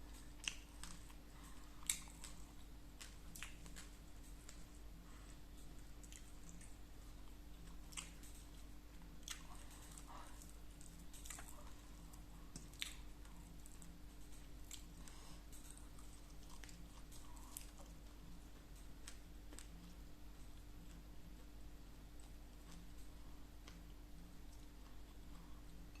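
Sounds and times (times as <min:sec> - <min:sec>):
person chewing food: 0:00.0 - 0:26.0
steady low hum: 0:00.0 - 0:26.0
mouth clicks and smacks: 0:00.4 - 0:01.2, 0:01.8 - 0:04.6.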